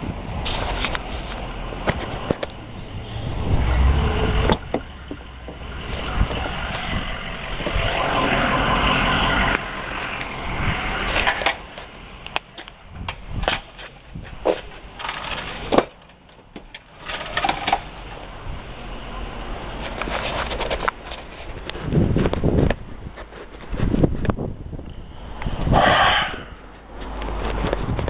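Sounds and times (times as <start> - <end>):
car engine running: 1.1 - 13.1.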